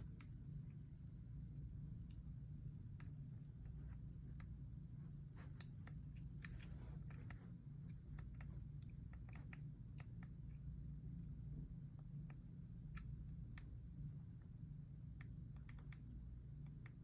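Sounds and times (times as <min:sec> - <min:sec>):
steady low hum: 0:00.0 - 0:17.0
faint light clicks: 0:11.9 - 0:17.0.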